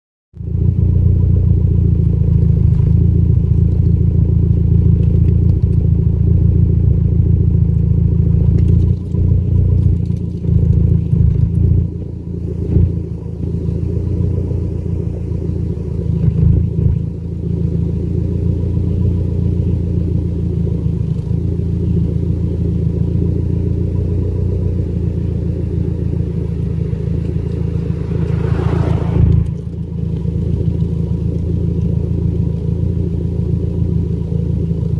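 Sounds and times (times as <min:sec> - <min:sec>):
engine idling with misfire: 0:00.4 - 0:28.7, 0:29.4 - 0:34.9
rising and falling whine: 0:12.2 - 0:31.2.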